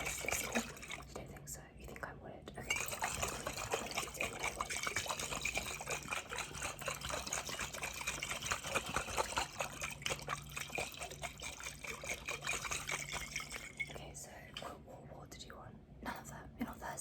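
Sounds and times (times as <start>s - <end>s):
water trickling and splashing: 0.0s - 1.2s, 2.6s - 14.1s.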